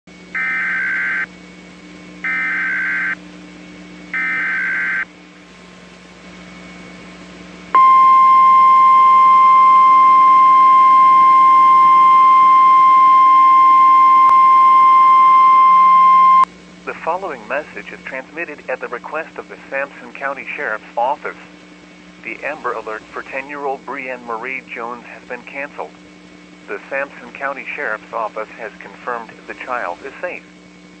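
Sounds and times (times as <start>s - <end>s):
steady warning alarm tone: 0.3s - 1.3s, 2.2s - 3.2s, 4.1s - 5.1s, 7.8s - 16.5s.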